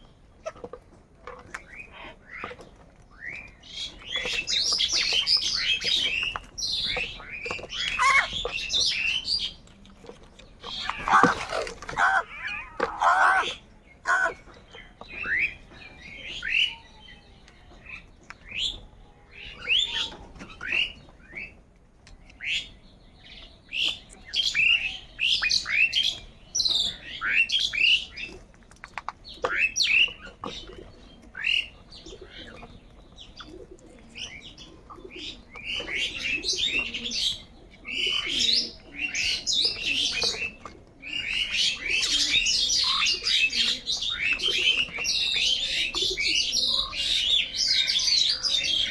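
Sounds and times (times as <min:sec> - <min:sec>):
crows calling: 0:06.8 - 0:08.8, 0:10.8 - 0:14.5.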